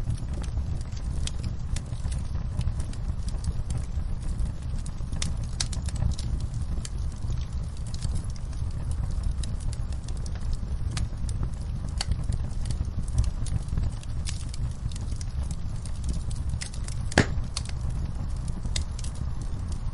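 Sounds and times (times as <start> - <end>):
low fire rumble: 0.0 - 19.9
wood fire crackling: 0.0 - 19.9.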